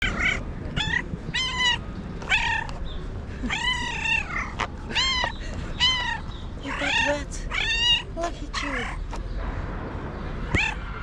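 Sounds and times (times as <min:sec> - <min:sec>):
cat meowing: 0:00.0 - 0:02.8, 0:03.4 - 0:09.0, 0:10.5 - 0:10.8.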